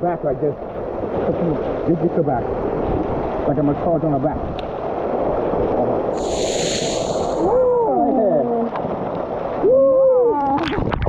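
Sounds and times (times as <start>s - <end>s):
spray hiss: 6.2s - 7.5s
waterfall rushing: 6.2s - 8.6s.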